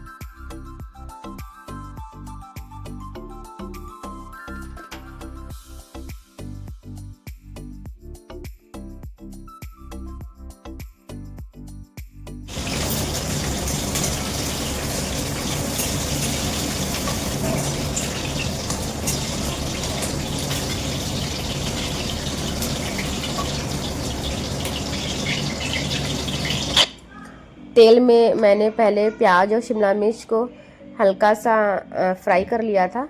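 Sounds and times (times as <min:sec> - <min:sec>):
running water: 0:12.5 - 0:27.0.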